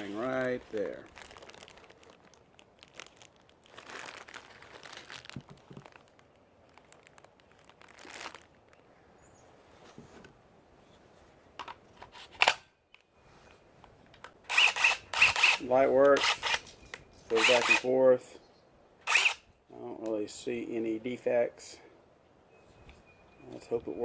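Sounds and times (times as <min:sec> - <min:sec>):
packaging crinkling: 0:00.1 - 0:08.8.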